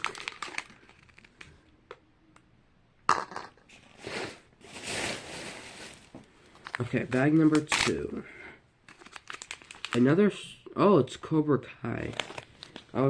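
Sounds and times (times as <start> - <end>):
plastic bag crinkling: 0.0 - 1.6, 4.0 - 8.0, 8.9 - 10.2, 11.9 - 13.0
plastic packaging clicks: 0.0 - 2.0, 6.6 - 8.0, 8.9 - 10.0, 12.0 - 13.0.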